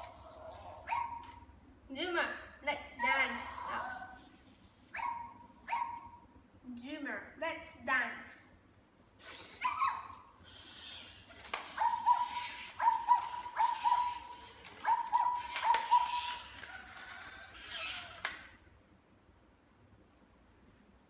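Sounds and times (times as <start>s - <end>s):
synthetic dog yips: 0.0s - 1.4s, 3.0s - 6.2s, 9.3s - 18.5s
sharp clicks: 11.2s - 18.6s.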